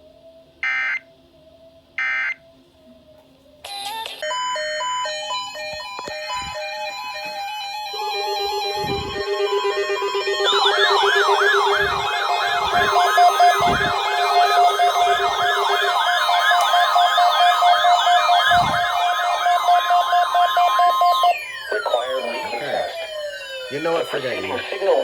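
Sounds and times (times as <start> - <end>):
high alarm tone: 0.6 - 1.0, 4.2 - 25.0
wailing siren sweep: 4.3 - 25.0
steady buzzing tone: 6.0 - 25.0.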